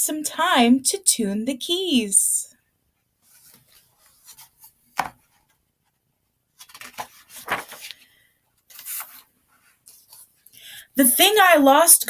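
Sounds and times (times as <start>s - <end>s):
paper rustling: 3.1s - 10.5s
knocks on book: 4.9s - 5.2s.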